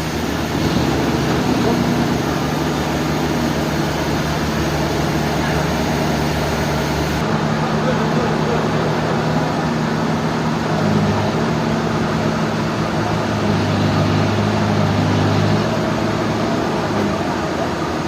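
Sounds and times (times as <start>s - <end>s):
low machine hum: 0.0s - 14.2s
sawmill machinery running: 0.0s - 18.0s.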